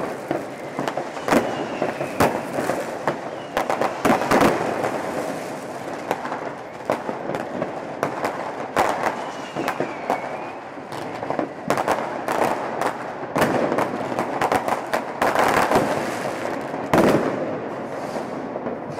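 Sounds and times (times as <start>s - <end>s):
firework whistle: 0.0s - 7.6s, 8.7s - 11.7s
firework bangs: 0.0s - 18.9s
fireworks crackling: 0.0s - 18.9s.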